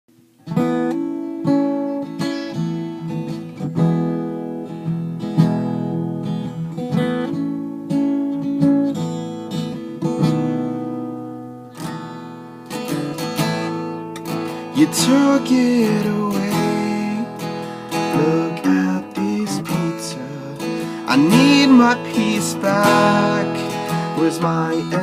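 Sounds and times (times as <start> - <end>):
acoustic guitar strumming: 0.1 - 25.0.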